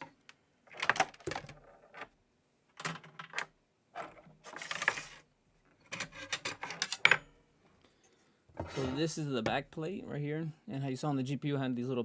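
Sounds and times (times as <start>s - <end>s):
metal parts clicking and clattering: 5.9s - 7.4s.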